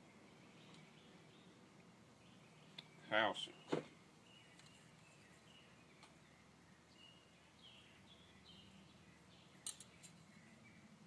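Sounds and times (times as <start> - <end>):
faint bird chirps: 0.0 - 11.0
small metallic click: 9.6 - 10.2.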